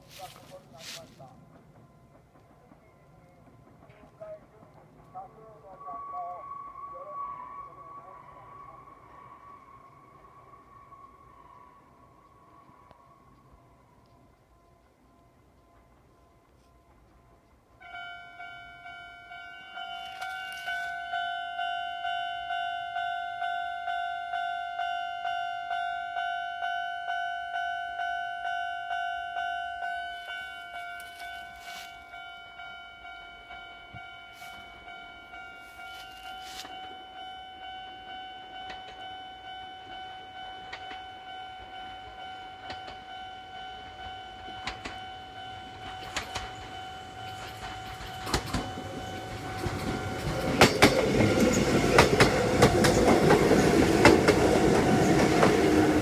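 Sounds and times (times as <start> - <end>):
train clicks: 0.0 - 6.3, 12.2 - 18.0, 19.3 - 21.8, 29.4 - 56.0
level crossing warning bell: 0.0 - 9.0, 13.8 - 56.0.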